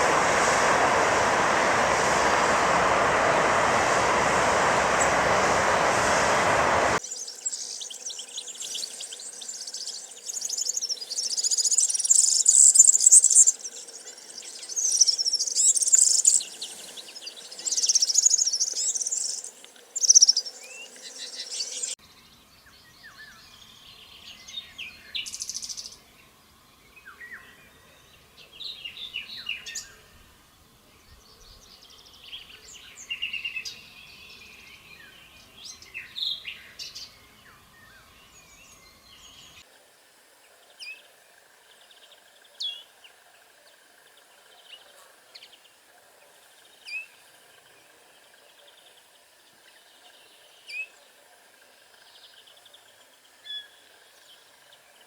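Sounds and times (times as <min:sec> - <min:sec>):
birds chirping and trilling: 0:00.0 - 0:22.0.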